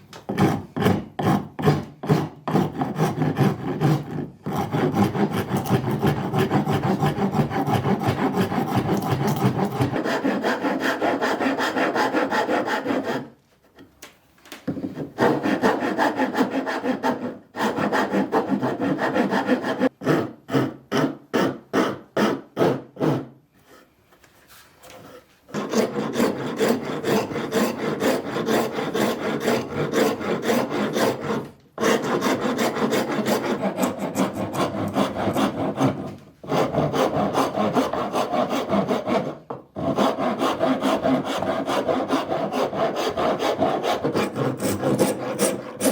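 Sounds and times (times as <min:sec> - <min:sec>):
handsaw rubbing strokes: 0:15.2 - 0:45.9.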